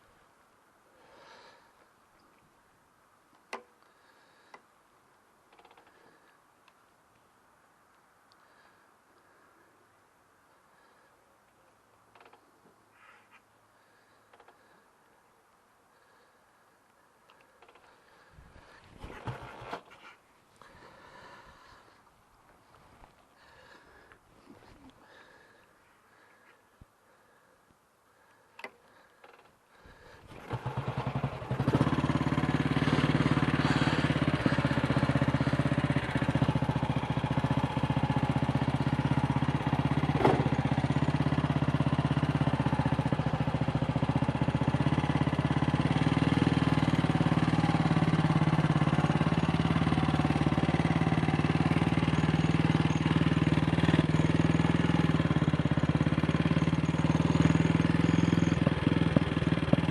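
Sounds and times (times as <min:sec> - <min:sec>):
motorcycle engine starting and running: 0:05.5 - 0:06.4, 0:12.1 - 0:12.5, 0:13.8 - 0:14.8, 0:15.9 - 0:16.7, 0:17.3 - 0:22.0, 0:22.6 - 0:26.4, 0:28.2 - 0:59.9.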